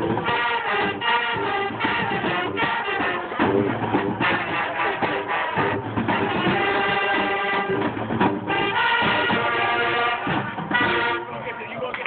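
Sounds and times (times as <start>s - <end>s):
music with held notes: 0.0s - 11.6s
percussion beat: 0.0s - 12.0s.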